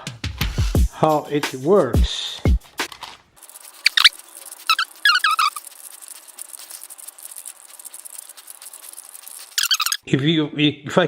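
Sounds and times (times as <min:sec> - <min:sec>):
puzzle layers clicking and rattling: 0:02.8 - 0:10.0
puzzle scraping bursts: 0:02.8 - 0:10.0.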